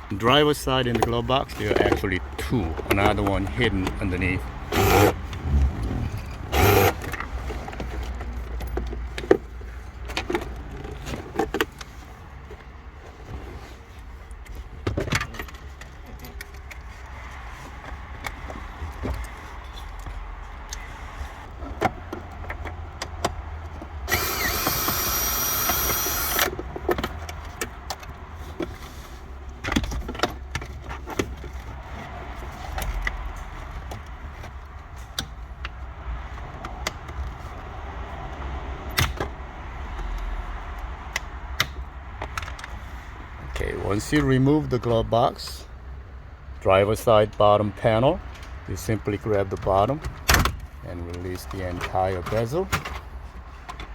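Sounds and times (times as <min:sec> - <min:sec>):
loud rasping noise: 0:04.7 - 0:07.1.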